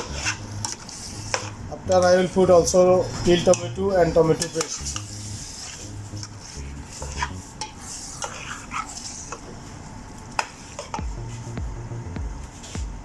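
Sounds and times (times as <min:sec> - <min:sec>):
spoon scraping a pan: 0:00.0 - 0:01.6, 0:04.3 - 0:09.6, 0:10.4 - 0:11.0.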